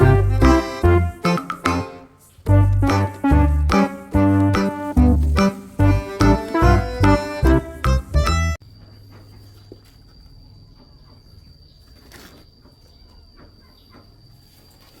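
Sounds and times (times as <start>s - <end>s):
background music: 0.0s - 8.6s.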